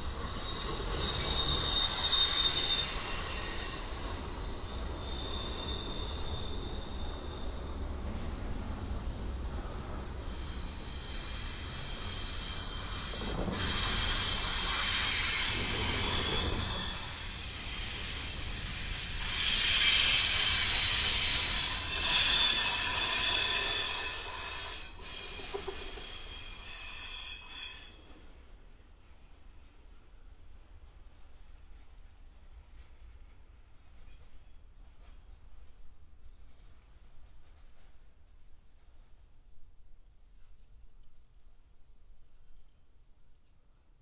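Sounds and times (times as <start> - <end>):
high-pitched wheel squeal: 0.0 - 7.7, 10.2 - 18.3, 19.4 - 28.0
freight cars rolling on rails: 0.0 - 29.8.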